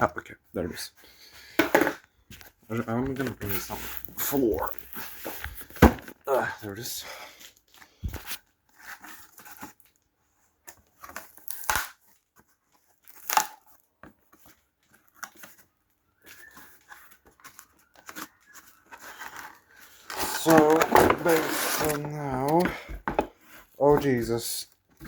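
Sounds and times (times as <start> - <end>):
packaging rustling and tearing: 3.1 - 6.0, 7.6 - 24.3.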